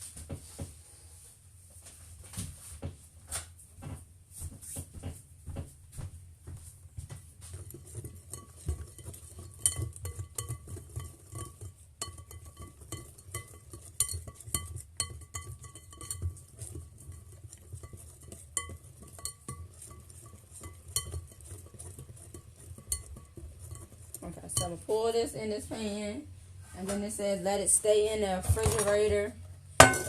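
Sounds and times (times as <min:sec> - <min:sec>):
spoon clinking against bowl: 0:07.8 - 0:23.9, 0:29.8 - 0:30.0.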